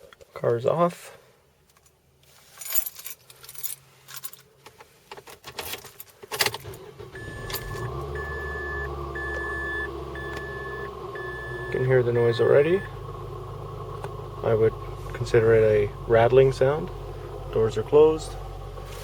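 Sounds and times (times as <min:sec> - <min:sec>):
car keys jangling: 0:02.6 - 0:04.5, 0:05.2 - 0:06.8
car engine starting and idling: 0:06.4 - 0:19.0
warning chime beeping: 0:07.2 - 0:13.0.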